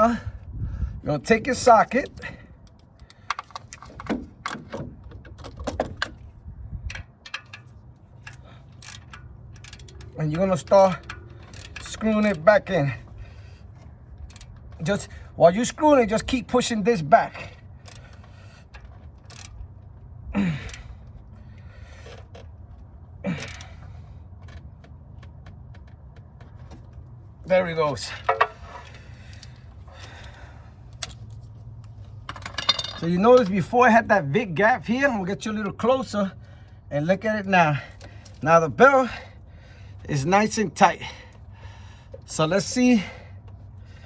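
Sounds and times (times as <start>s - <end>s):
faint ratchet clicks: 6.8s - 12.5s, 13.4s - 15.1s, 17.8s - 19.9s.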